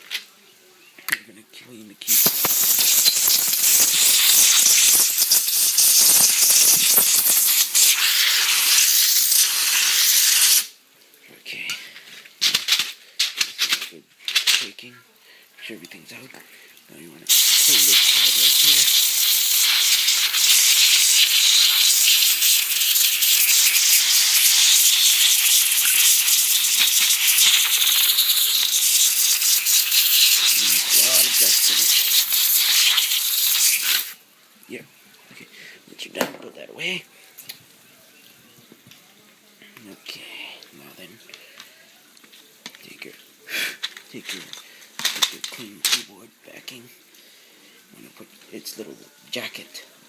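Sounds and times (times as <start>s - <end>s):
compressed air can blowing: 2.0s - 10.8s, 17.3s - 34.2s.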